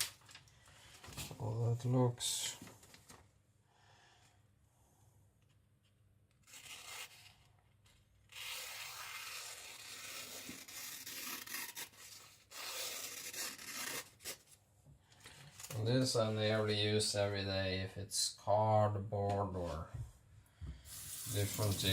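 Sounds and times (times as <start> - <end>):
blade slicing through paper: 6.4 - 7.4, 8.3 - 14.4, 21.2 - 21.9.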